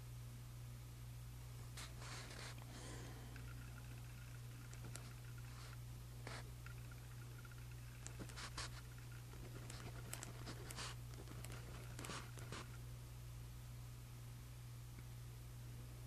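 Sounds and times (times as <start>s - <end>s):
pen scratching on paper: 1.8s - 2.6s, 3.5s - 12.8s.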